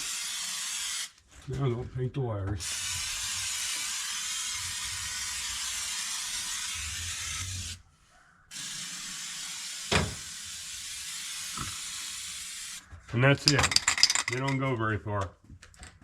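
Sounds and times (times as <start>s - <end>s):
aerosol can spraying: 0.0s - 1.2s, 2.6s - 7.8s, 8.5s - 12.8s.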